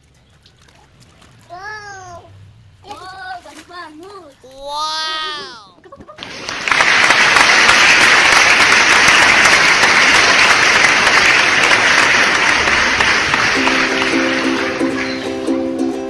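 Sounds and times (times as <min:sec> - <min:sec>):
crowd applauding: 0:06.2 - 0:15.9.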